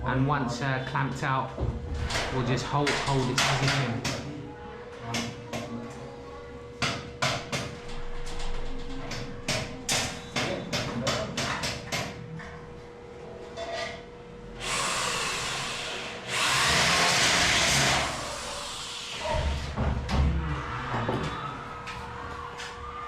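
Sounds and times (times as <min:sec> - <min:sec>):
power tool on metal: 0:14.6 - 0:19.2.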